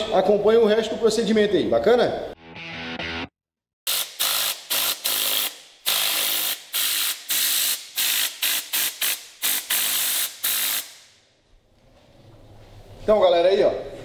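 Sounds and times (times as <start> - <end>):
air gun hissing spray: 3.9 - 11.1.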